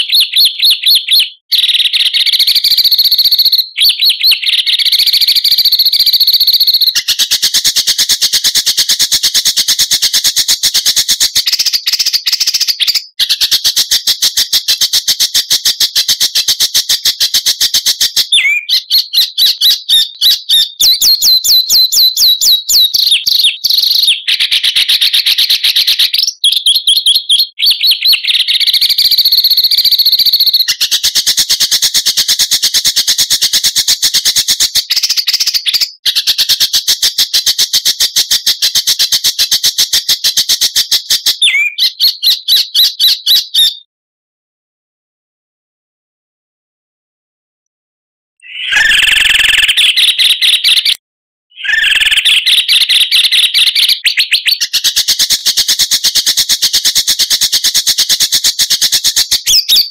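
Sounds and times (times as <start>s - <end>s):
songbird trilling song: 0.0s - 7.8s, 17.0s - 31.0s, 41.2s - 43.8s, 48.4s - 55.0s, 59.4s - 59.9s.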